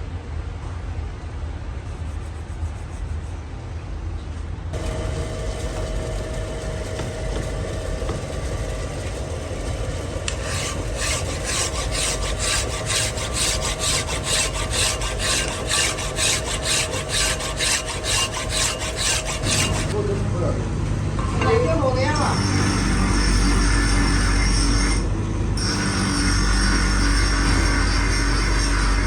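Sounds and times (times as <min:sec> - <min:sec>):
hand file rasping on metal: 0:04.8 - 0:20.0
machine motor humming: 0:04.8 - 0:20.0.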